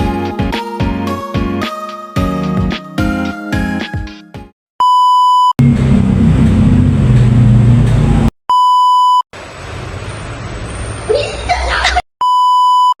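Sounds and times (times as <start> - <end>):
background music: 0.0 - 4.5
loud low rumbling noise: 5.6 - 8.3
electronic beep tones: 12.2 - 13.0.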